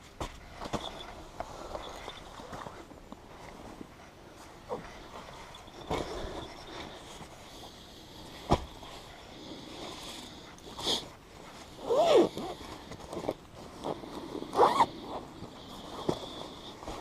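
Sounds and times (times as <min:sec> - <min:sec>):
zipper pulled: 0:11.8 - 0:12.6, 0:14.5 - 0:15.0.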